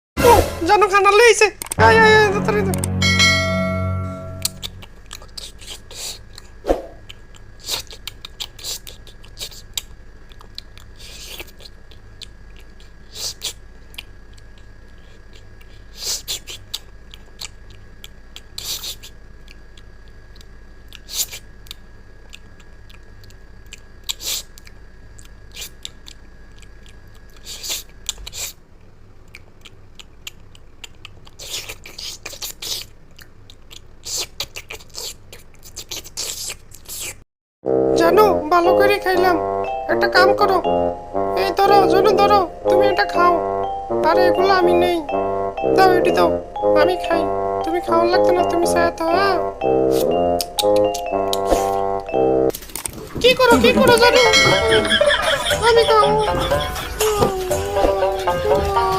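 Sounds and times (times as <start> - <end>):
faint steady hum: 0.7 - 37.0, 37.7 - 58.9
person chewing and crunching food: 4.5 - 37.2, 49.9 - 51.8, 52.5 - 53.3.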